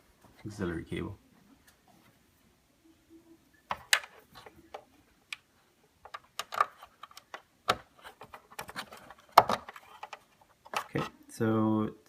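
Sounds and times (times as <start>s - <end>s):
cable plug plastic clicks: 6.1s - 7.9s.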